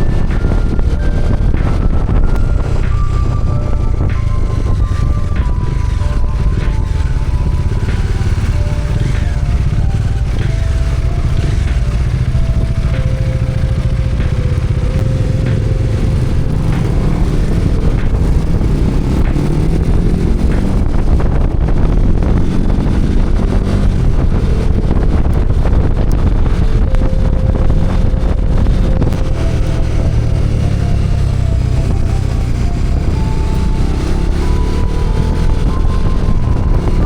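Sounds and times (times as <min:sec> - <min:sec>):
motorcycle engine running: 0:00.0 - 0:37.0
wind noise on microphone: 0:00.0 - 0:37.0.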